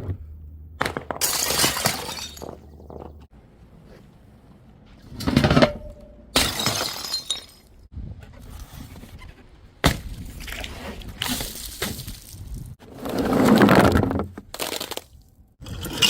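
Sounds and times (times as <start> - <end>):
glass bottles smashing: 0.9 - 3.1, 6.4 - 7.8.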